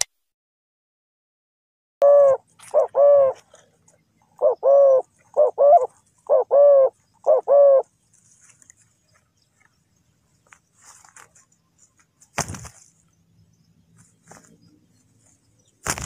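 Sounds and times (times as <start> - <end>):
dove cooing: 2.0 - 3.7, 4.3 - 7.9.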